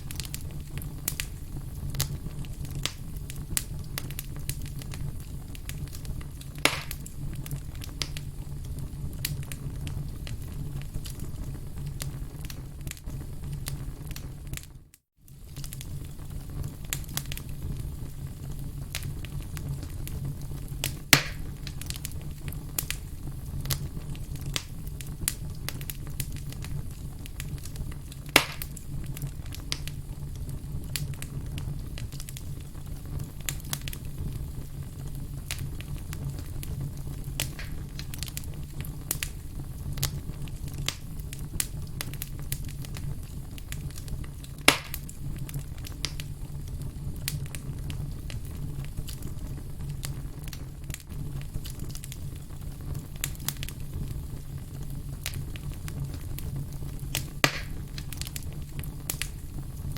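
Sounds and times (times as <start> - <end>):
fire popping loudly: 0.0 - 59.9
wood fire crackling: 0.0 - 59.9.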